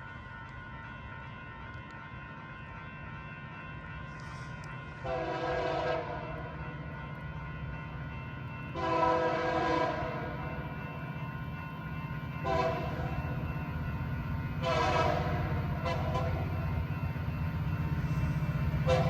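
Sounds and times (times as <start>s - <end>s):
locomotive air horn chord: 5.0s - 6.3s, 8.8s - 10.4s, 12.4s - 13.2s, 14.6s - 16.6s, 18.8s - 19.0s.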